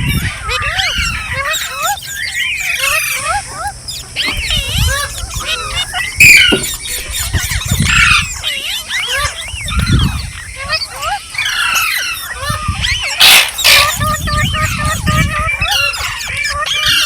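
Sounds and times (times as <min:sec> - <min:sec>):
parrots chattering and screeching: 0:00.0 - 0:17.0.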